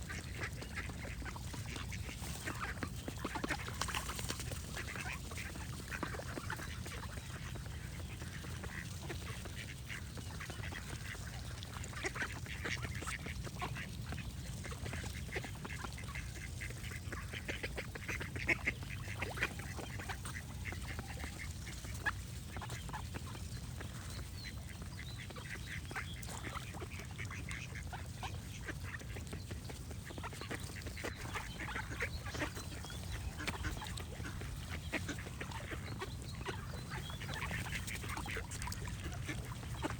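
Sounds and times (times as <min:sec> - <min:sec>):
ducks quacking: 0:00.0 - 0:39.9
other birds calling: 0:18.1 - 0:39.9.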